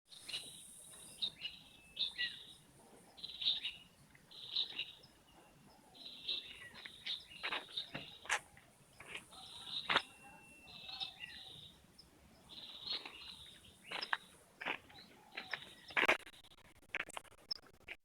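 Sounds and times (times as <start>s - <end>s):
faint high insect hiss: 0.1s - 5.2s
birds chirping: 0.1s - 16.6s.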